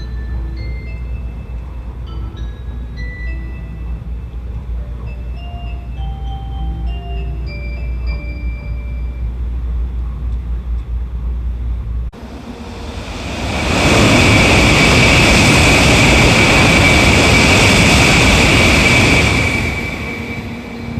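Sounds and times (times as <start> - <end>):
low train rumble: 0.0 - 20.9
train rushing hiss with high whine: 12.2 - 20.9.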